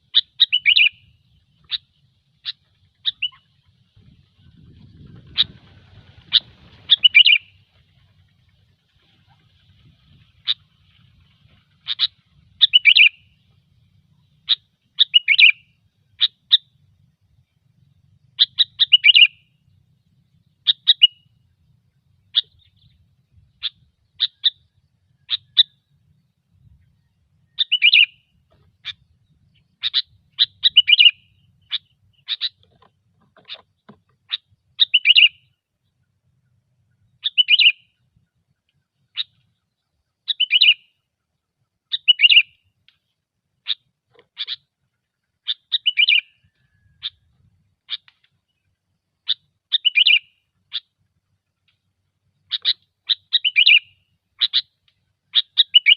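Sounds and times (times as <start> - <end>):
bulbul chirping: 0.1 - 3.6, 11.8 - 13.5, 14.1 - 16.8, 18.1 - 19.8, 20.5 - 21.5, 22.2 - 25.9, 27.4 - 35.6, 37.2 - 38.0, 41.9 - 42.6, 43.6 - 44.7, 45.4 - 47.2, 49.2 - 50.9, 52.5 - 55.9.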